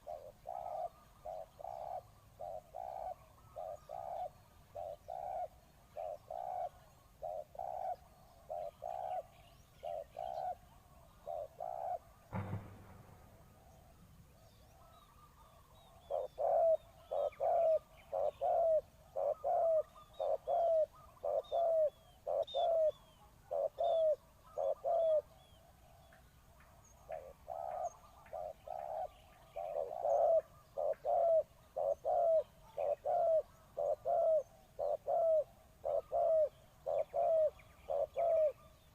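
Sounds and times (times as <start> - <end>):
dove cooing: 0.0 - 12.1, 15.8 - 25.4, 27.0 - 38.8
small birds chirping: 0.0 - 12.6, 13.2 - 38.9
sharp knock: 12.3 - 14.4.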